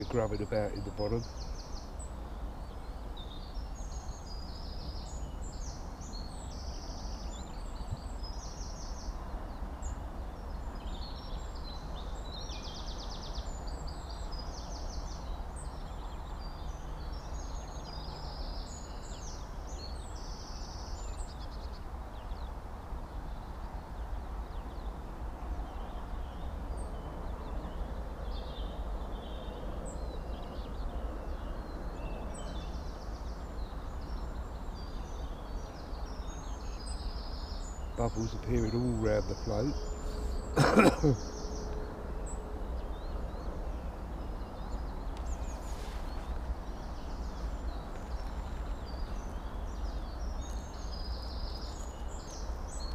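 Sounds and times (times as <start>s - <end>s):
gulls calling: 38.0s - 42.3s.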